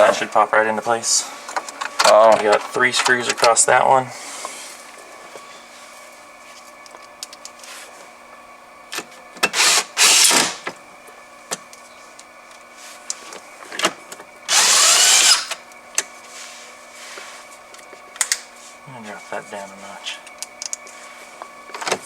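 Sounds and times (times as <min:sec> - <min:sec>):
power screwdriver whirring: 0:09.5 - 0:10.6, 0:14.5 - 0:15.6.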